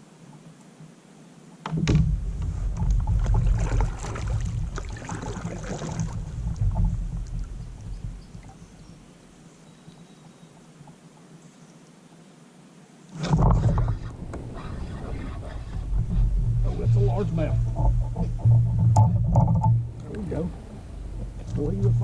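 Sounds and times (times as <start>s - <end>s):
water splashing against kayak: 1.7s - 9.3s, 13.2s - 22.0s
low rumble and crackling: 1.7s - 9.4s, 13.2s - 22.0s.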